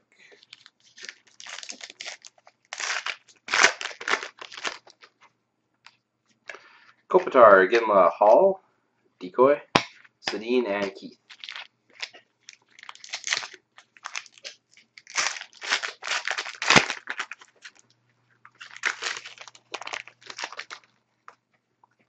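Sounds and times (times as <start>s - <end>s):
plastic wrapper crinkling: 0.2s - 6.7s, 10.8s - 22.0s.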